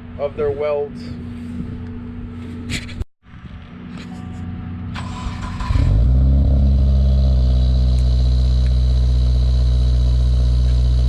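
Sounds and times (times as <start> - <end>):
car engine starting and idling: 4.4 - 11.0.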